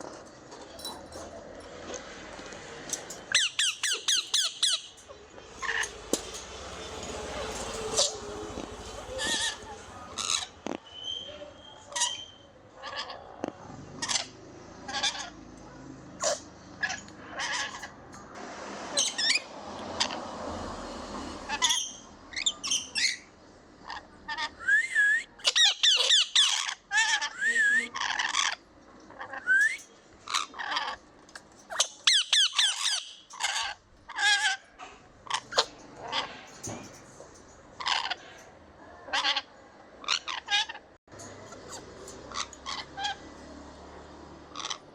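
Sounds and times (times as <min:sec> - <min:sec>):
lovebirds chirping and squawking: 0:02.9 - 0:15.5, 0:16.2 - 0:18.2, 0:18.9 - 0:20.3, 0:21.4 - 0:43.6, 0:44.4 - 0:44.9
falling bird whistles: 0:10.9 - 0:11.8, 0:29.5 - 0:29.8.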